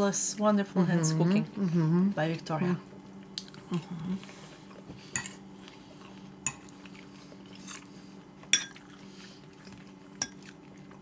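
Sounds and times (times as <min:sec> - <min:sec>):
faint steady hum: 0:00.0 - 0:11.0
cutlery clinking against plates: 0:08.5 - 0:08.9.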